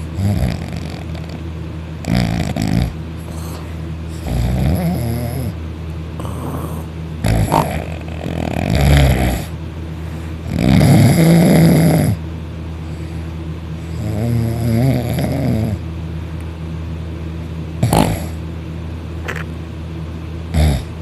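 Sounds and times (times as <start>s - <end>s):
loud rasping snoring: 0.0s - 1.4s, 2.0s - 5.6s, 6.2s - 9.6s, 10.4s - 12.2s, 13.9s - 15.8s, 17.8s - 18.4s, 20.5s - 21.0s
sharp snort: 6.2s - 9.5s, 17.8s - 18.4s.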